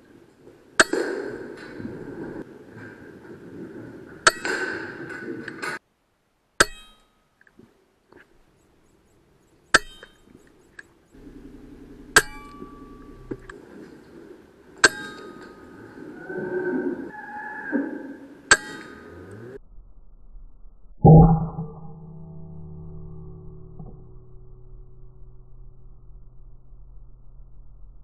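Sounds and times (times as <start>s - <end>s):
metallic ring: 9.7s - 10.3s, 11.2s - 13.5s.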